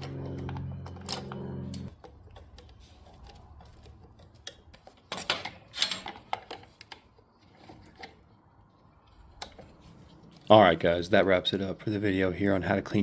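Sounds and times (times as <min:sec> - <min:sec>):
metal tools clattering: 0:04.9 - 0:06.8.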